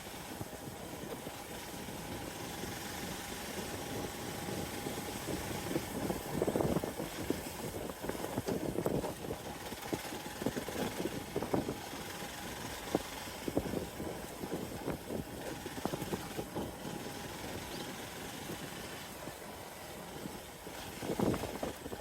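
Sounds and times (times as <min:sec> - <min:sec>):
motorcycle engine running: 0:00.0 - 0:22.0.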